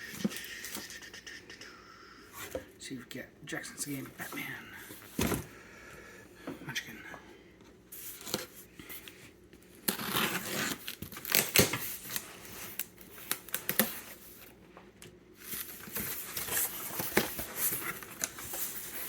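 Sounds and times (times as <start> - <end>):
packaging tearing and crinkling: 9.8 - 14.2.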